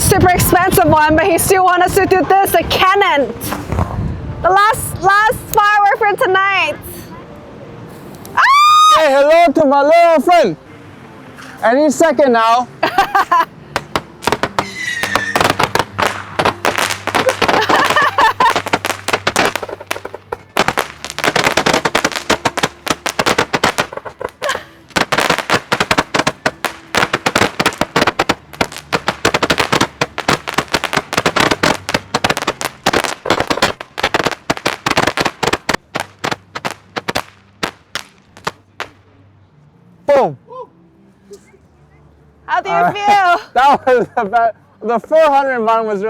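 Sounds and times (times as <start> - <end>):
fireworks cracking and popping: 12.9 - 39.0.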